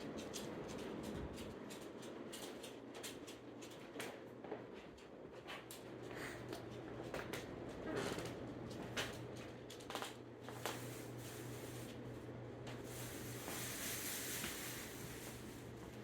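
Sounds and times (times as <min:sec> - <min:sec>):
ceiling fan motor hum: 0:00.0 - 0:16.0
hiss: 0:12.8 - 0:15.7.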